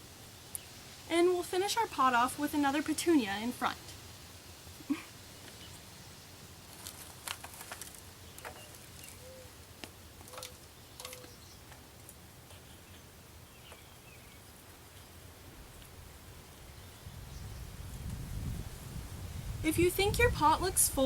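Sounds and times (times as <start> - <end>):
hands in potting soil: 6.6 - 13.0.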